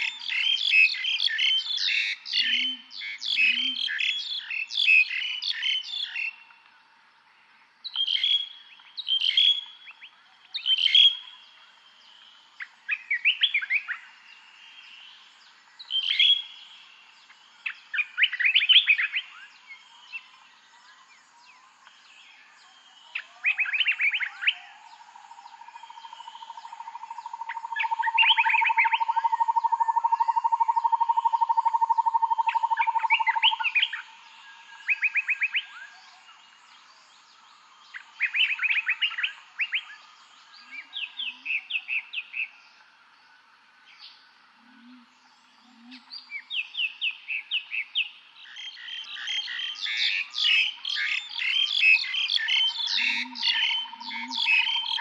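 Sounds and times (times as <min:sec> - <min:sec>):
faint low bird calls: 0:00.0 - 0:06.8, 0:22.6 - 0:42.8, 0:44.0 - 0:48.0, 0:48.6 - 0:55.0
songbird phrases: 0:00.0 - 0:55.0.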